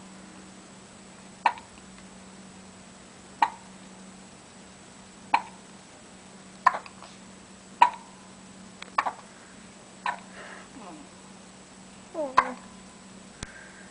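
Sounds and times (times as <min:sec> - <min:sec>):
babies hiccuping: 0:12.2 - 0:12.6.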